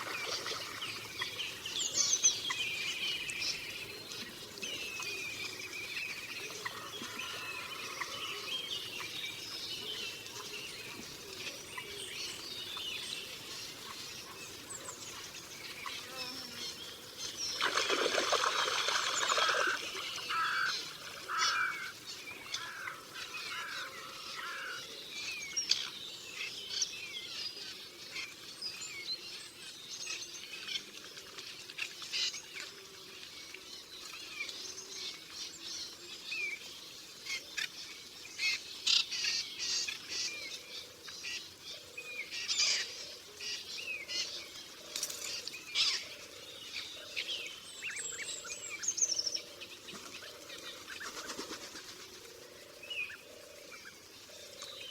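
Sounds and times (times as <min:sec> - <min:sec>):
birds chirping and trilling: 0:00.0 - 0:29.2.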